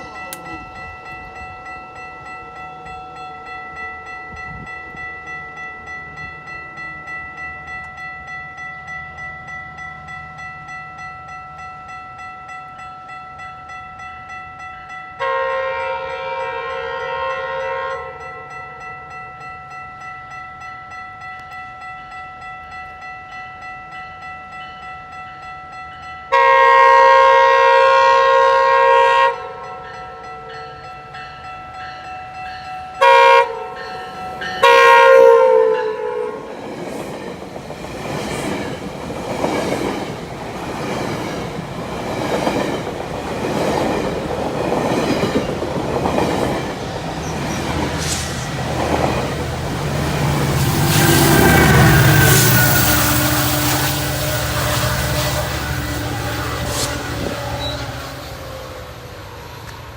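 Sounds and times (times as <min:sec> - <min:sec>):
crossing warning bell ringing: 0:00.0 - 0:59.9
train air horn chord: 0:15.2 - 0:18.6, 0:26.3 - 0:29.7, 0:33.0 - 0:36.5, 0:50.2 - 0:59.4.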